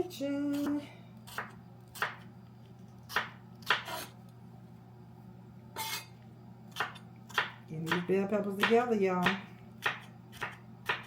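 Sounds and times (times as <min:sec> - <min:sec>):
low steady hum: 0:00.0 - 0:11.0
knife chopping on cutting board: 0:01.3 - 0:02.2, 0:03.1 - 0:04.1, 0:06.8 - 0:11.0.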